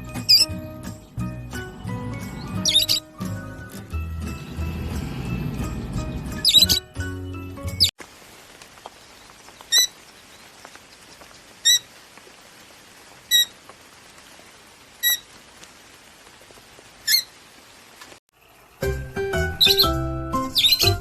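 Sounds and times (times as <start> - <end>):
lovebird chirps: 0.1 - 1.2, 2.2 - 3.6, 6.3 - 7.0, 19.6 - 21.0.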